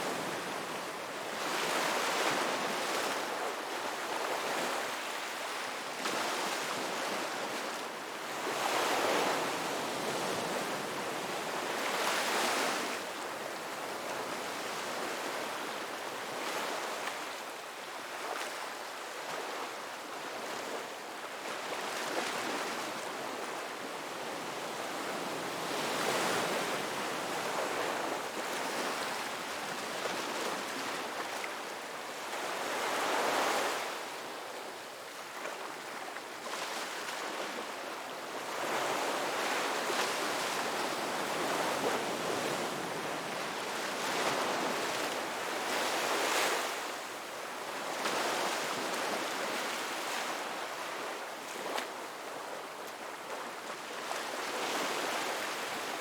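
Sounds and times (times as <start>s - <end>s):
ocean waves breaking on a beach: 0.0s - 56.0s.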